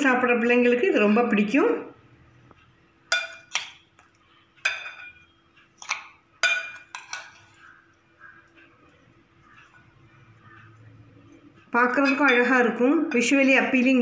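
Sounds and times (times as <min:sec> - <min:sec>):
metal spoon clinking on metal: 0:03.1 - 0:07.6, 0:11.9 - 0:13.5.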